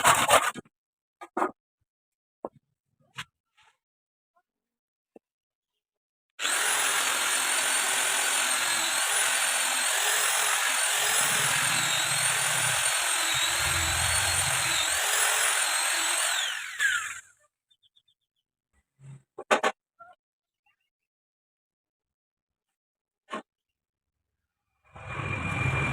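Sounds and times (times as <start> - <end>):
electric power tool whining: 6.4 - 17.3.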